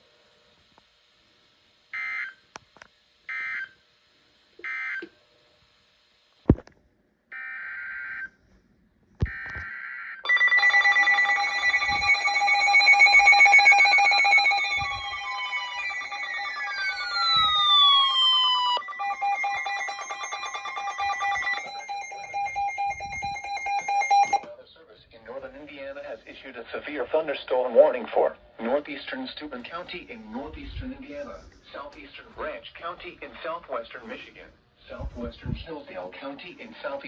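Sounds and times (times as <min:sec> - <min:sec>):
data tone bursts: 0:10.3 - 0:18.1, 0:18.8 - 0:24.4
weather radio alarms beeping: 0:10.3 - 0:24.4.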